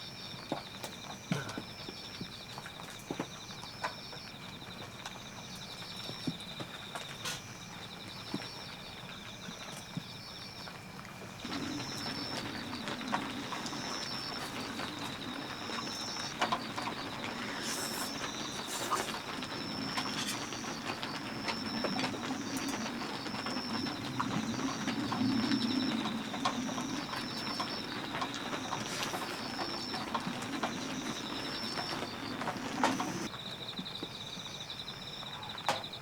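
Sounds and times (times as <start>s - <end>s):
heavy rain on a tent: 4.4s - 33.4s
high chirping: 11.4s - 33.3s.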